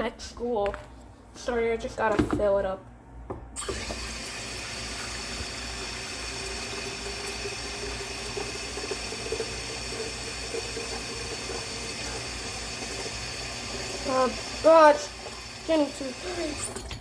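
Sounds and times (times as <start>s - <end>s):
water running into kettle: 3.6s - 17.0s.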